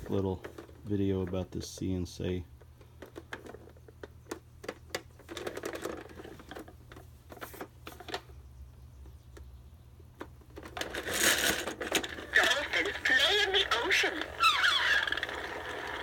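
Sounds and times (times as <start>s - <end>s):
plastic toy clicks and rattles: 3.0s - 6.8s, 10.5s - 16.0s
toy sound: 12.2s - 16.0s.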